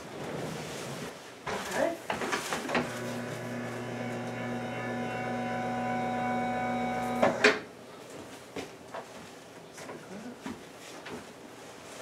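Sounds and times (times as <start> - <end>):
small electric motor humming: 2.9 - 7.4.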